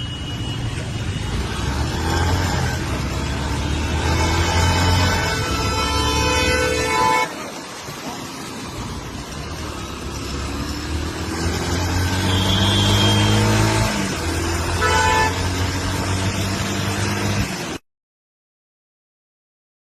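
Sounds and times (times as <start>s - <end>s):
road traffic engines: 0.0s - 17.8s
car horn honking: 3.8s - 7.5s, 12.0s - 14.0s, 14.6s - 15.6s.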